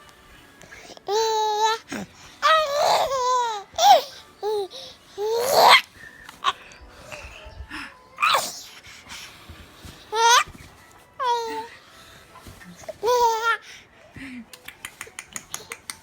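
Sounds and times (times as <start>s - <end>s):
baby giggling and squealing: 1.1s - 6.6s, 8.2s - 8.6s, 10.1s - 10.6s, 12.8s - 13.6s.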